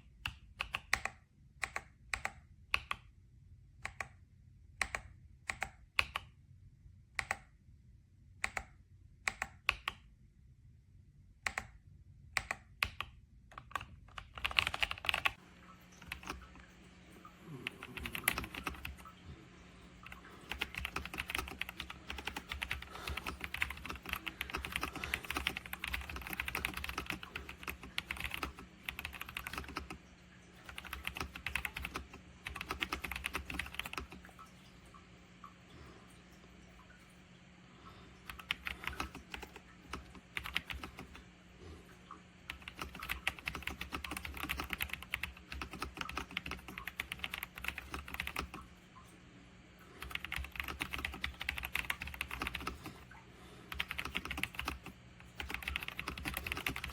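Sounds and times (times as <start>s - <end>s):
mechanical keyboard typing: 12.4s - 15.4s, 16.0s - 16.5s, 17.5s - 19.2s, 20.0s - 34.4s, 38.2s - 41.3s, 42.5s - 48.7s, 49.9s - 53.1s, 53.7s - 56.9s.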